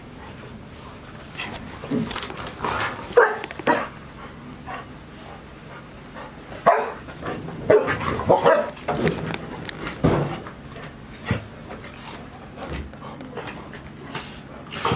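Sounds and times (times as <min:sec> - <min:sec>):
dogs barking: 0:03.1 - 0:04.0, 0:06.6 - 0:08.9.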